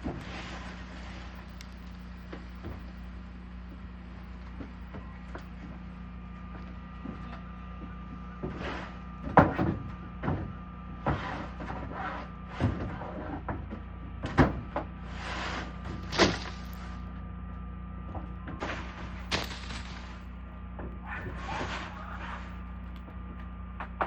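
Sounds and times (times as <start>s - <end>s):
steady low hum: 0.0s - 24.0s
short scrape: 0.2s - 1.4s, 8.5s - 9.0s, 11.1s - 13.3s, 15.0s - 16.8s, 21.2s - 22.7s
knocks and thuds: 15.9s - 16.6s.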